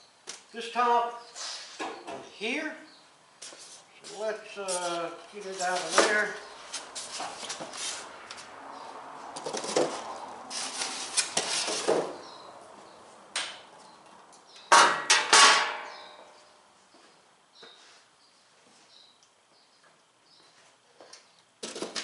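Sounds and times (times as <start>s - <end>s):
metal cart parts rustling and clattering: 14.7s - 16.2s
loud metallic clanks: 14.7s - 16.3s.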